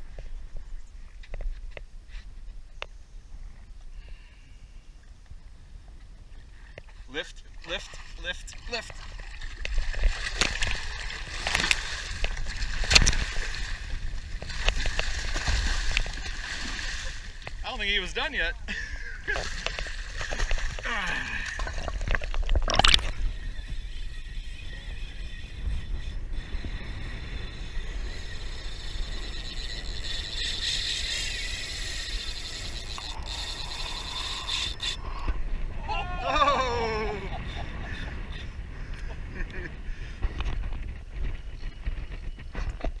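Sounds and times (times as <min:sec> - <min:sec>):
wind rumble on microphone: 0:00.0 - 0:43.0
water splashing against boat: 0:07.1 - 0:18.5, 0:19.3 - 0:23.4
fishing reel ratcheting: 0:23.0 - 0:35.3.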